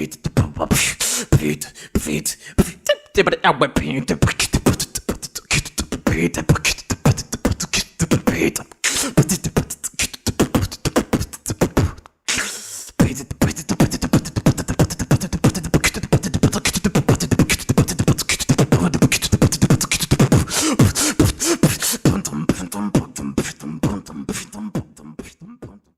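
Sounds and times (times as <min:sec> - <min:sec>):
beatboxing: 0:00.0 - 0:25.9
hissing breath: 0:12.3 - 0:13.0, 0:20.4 - 0:22.1.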